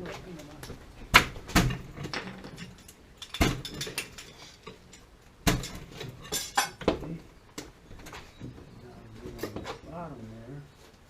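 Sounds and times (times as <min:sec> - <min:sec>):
light metal rattles: 0:00.0 - 0:10.1
metal clanks and knocks: 0:00.6 - 0:07.2.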